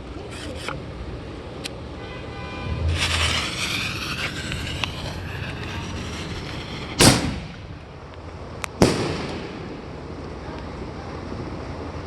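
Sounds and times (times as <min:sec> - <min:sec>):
sharp firework bang: 0:02.4 - 0:07.8, 0:08.8 - 0:10.0
firework fuse hissing: 0:02.6 - 0:08.0.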